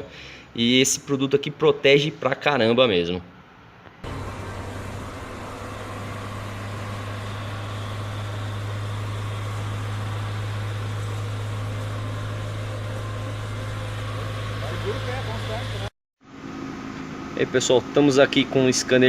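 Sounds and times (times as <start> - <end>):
car engine idling: 4.0 - 15.9.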